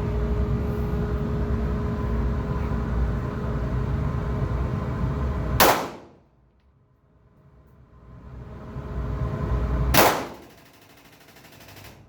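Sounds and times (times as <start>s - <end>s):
steady droning background noise: 0.0s - 12.0s
pistol shot: 5.6s - 6.2s, 10.0s - 10.5s.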